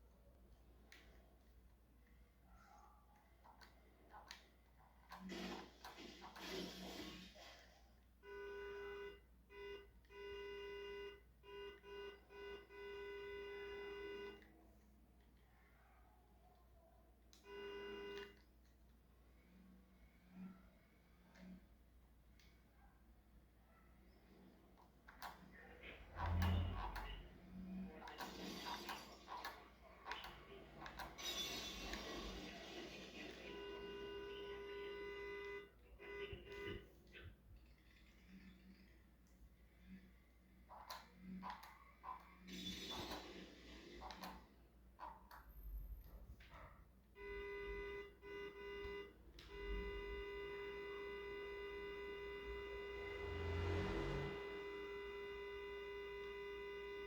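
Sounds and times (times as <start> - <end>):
car horn honking: 8.2 - 14.4, 17.4 - 18.4, 33.4 - 36.9, 47.2 - 57.0.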